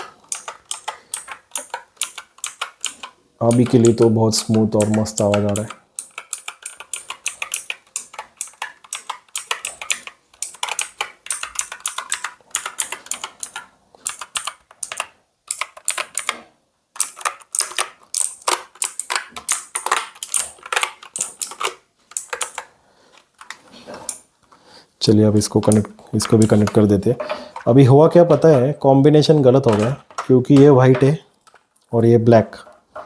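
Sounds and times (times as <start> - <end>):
mechanical keyboard key clacks: 0.3 - 16.4, 17.0 - 22.6.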